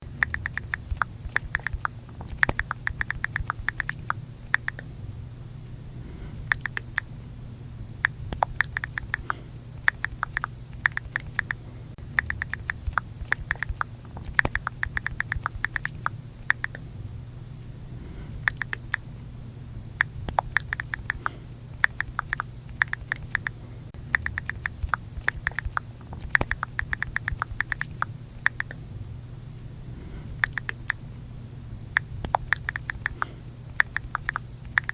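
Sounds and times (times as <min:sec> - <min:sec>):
faint steady hum: 0:00.0 - 0:34.9
phone keyboard clicks: 0:00.2 - 0:04.8, 0:06.5 - 0:07.0, 0:08.3 - 0:11.6, 0:12.2 - 0:16.8, 0:18.5 - 0:18.9, 0:20.3 - 0:23.5, 0:24.2 - 0:28.8, 0:30.4 - 0:31.0, 0:32.2 - 0:34.9.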